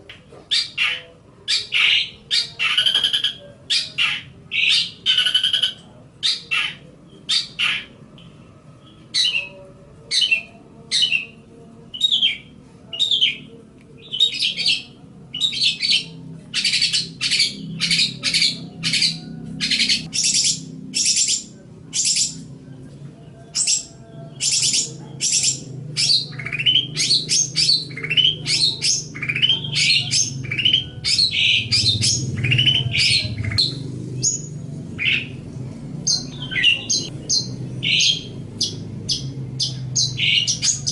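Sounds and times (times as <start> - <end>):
bird chirping harshly: 0.5 - 7.9, 36.0 - 40.9.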